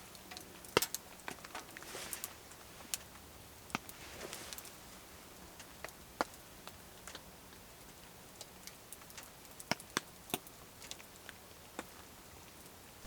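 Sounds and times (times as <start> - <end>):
faint steady hiss: 0.0 - 13.0.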